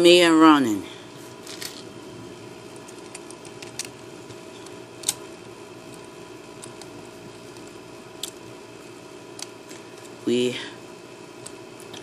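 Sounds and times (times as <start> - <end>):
steady background hum: 0.0 - 12.0.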